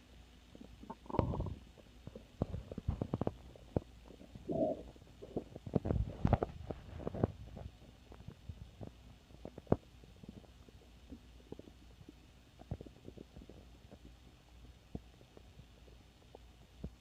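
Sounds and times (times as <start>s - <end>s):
stomach growling: 0.5s - 17.0s.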